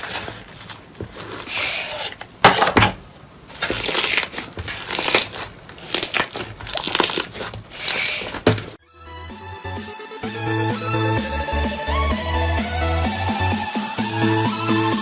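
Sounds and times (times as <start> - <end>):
slime squelching and popping: 3.5 - 8.6.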